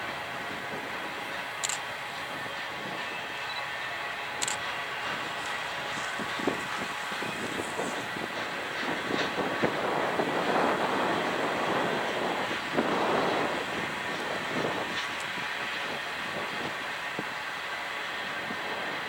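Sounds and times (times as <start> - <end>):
freight train wheels on rails: 0.0 - 19.0.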